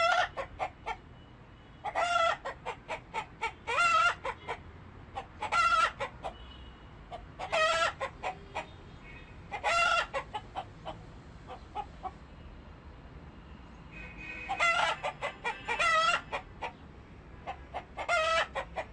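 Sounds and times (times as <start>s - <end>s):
chickens clucking: 0.0s - 1.0s, 1.8s - 6.4s, 7.1s - 8.8s, 9.5s - 12.2s, 14.5s - 16.8s, 17.4s - 18.9s
loud short chicken calls: 9.5s - 10.3s, 13.9s - 16.4s.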